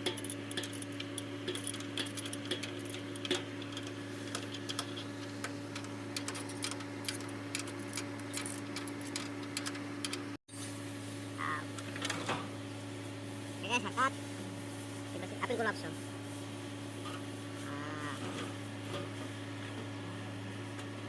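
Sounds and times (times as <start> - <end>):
hand tools clinking on metal: 0.0 - 5.1
steady low hum: 0.0 - 21.0.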